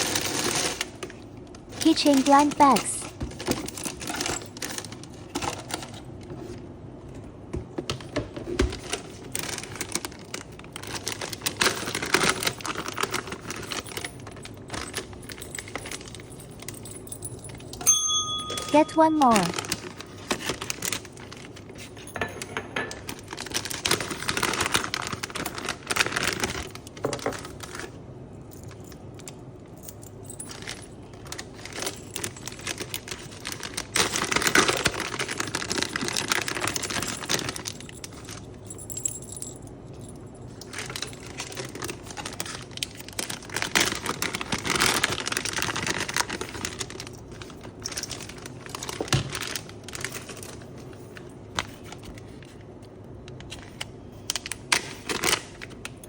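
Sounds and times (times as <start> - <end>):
plastic packaging rustling: 0.0 - 17.7, 18.6 - 28.0, 28.6 - 39.2, 40.4 - 56.0
metal keychains jingling: 13.6 - 19.7.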